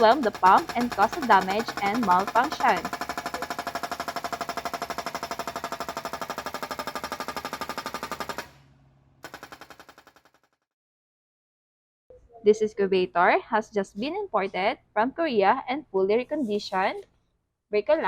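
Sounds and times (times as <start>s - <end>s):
hydraulic breaker hammering: 0.0s - 8.5s.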